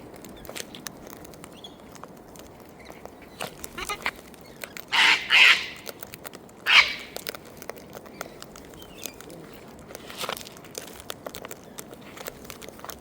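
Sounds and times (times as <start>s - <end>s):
cockatoo screeching: 4.9s - 6.0s, 6.7s - 7.2s.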